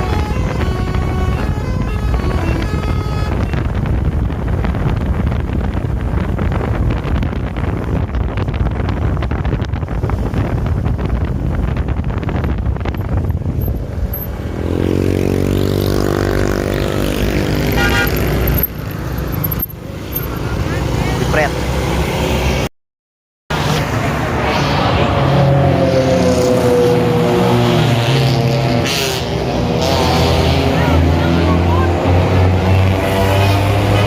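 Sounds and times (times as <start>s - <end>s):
long bus horn: 0.0s - 3.7s, 17.5s - 18.7s
road noise: 0.0s - 22.7s, 23.5s - 34.0s.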